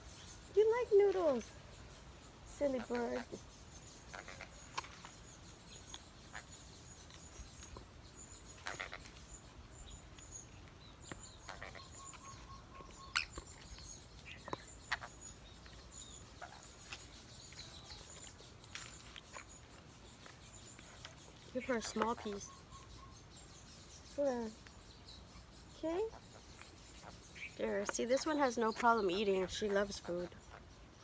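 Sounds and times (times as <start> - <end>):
high-pitched bird chirps: 11.0 - 18.4, 20.7 - 24.8.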